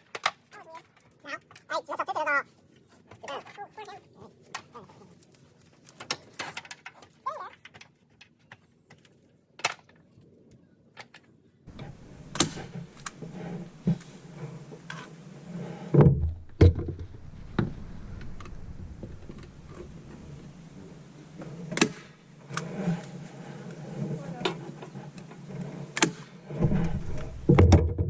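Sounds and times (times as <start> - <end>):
faint steady background noise: 0.0 - 28.0
objects knocking and clunking: 11.0 - 15.2, 15.8 - 22.7, 24.0 - 28.0
heavy thumps: 15.9 - 21.5, 26.5 - 28.0.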